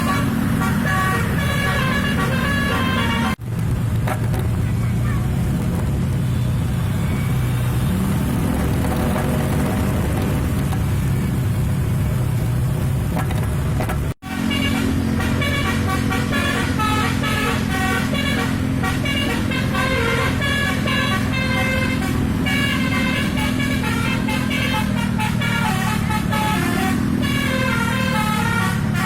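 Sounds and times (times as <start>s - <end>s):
multi-tone bus horn tune: 0.0s - 3.4s, 14.2s - 29.0s
bus engine humming: 0.0s - 29.0s
road traffic rumble: 0.0s - 29.0s.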